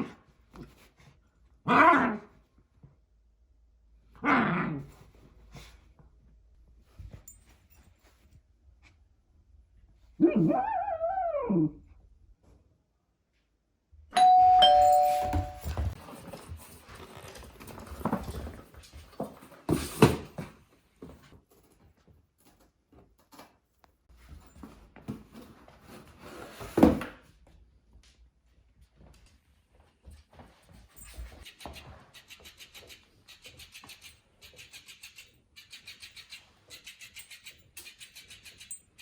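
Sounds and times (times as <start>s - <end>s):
doorbell ding-dong chime: 14.2s - 15.9s
rustling and clattering: 14.9s - 27.3s.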